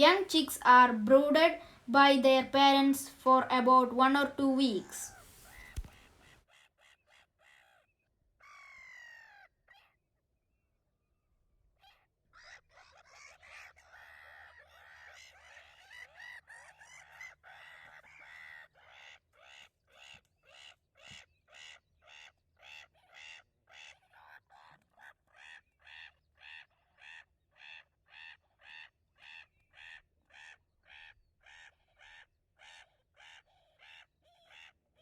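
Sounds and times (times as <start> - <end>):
gulls calling: 0.0 - 6.3.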